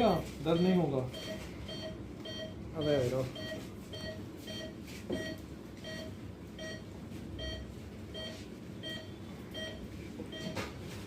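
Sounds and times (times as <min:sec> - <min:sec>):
patient monitor beeping: 0:00.0 - 0:10.6.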